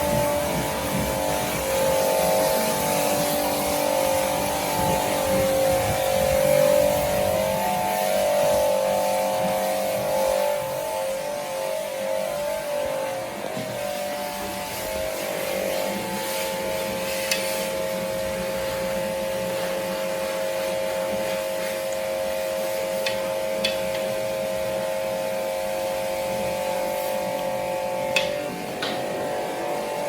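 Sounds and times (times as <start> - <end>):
motor humming: 22.9 - 30.0.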